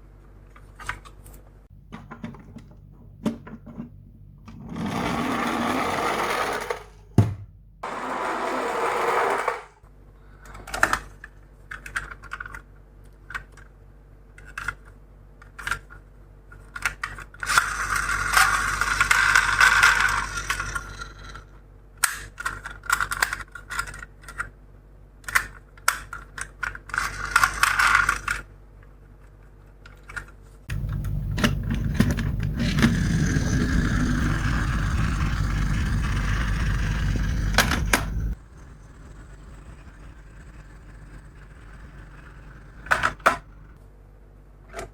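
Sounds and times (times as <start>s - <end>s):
toy cars clicking and knocking: 10.7s - 13.7s, 16.6s - 21.2s, 22.0s - 24.5s, 25.2s - 28.5s
low rolling rumble: 30.7s - 43.8s
toy car wheels rattling: 30.7s - 43.8s.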